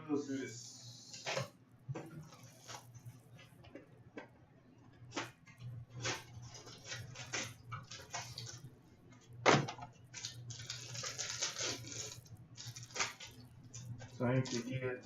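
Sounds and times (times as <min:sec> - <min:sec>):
wrapper tearing: 0:10.1 - 0:13.4
wrapper crinkling and rustling: 0:10.1 - 0:14.8.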